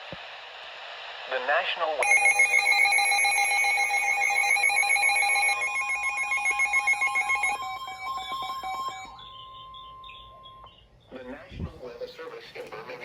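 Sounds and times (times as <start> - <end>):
high electronic alert tone: 2.0 - 9.4.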